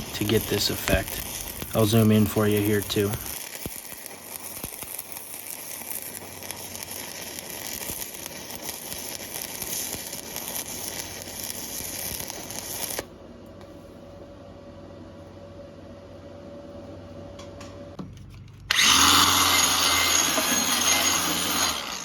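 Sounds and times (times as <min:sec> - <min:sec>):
welding arc crackling: 0:00.0 - 0:13.1, 0:18.7 - 0:22.0.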